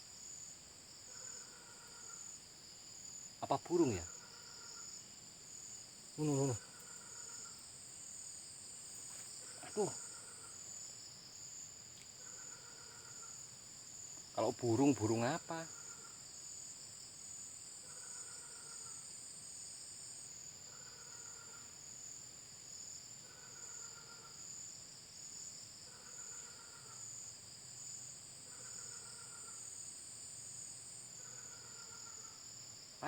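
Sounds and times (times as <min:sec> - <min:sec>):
insects droning: 0:00.0 - 0:33.0
loud animal call: 0:06.2 - 0:07.5, 0:09.5 - 0:10.5.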